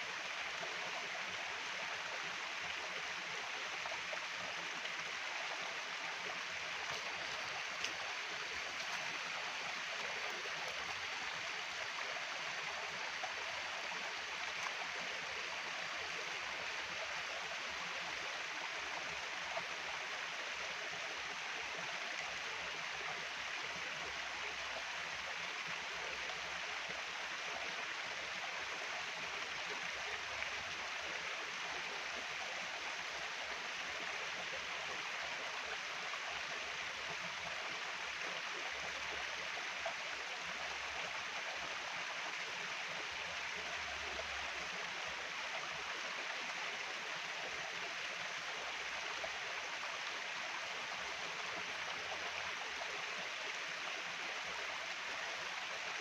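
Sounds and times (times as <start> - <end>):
stream water rushing: 0.0 - 20.4.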